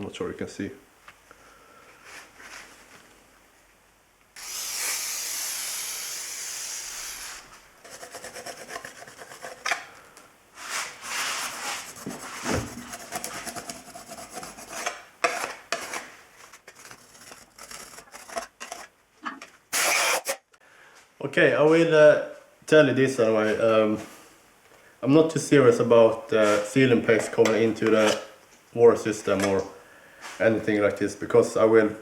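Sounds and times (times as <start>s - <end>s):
razor blade scraping metal: 19.7s - 20.4s.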